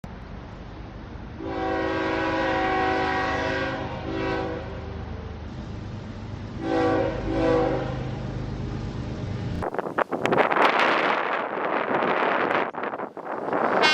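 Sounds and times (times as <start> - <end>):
train rumbling: 0.0 - 13.9
train air horn blasts: 1.4 - 5.1, 6.6 - 8.2, 13.7 - 13.9.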